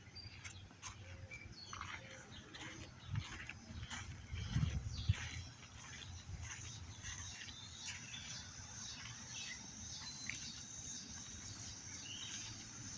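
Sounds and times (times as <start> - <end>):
high-pitched insect chorus: 3.5 - 12.9.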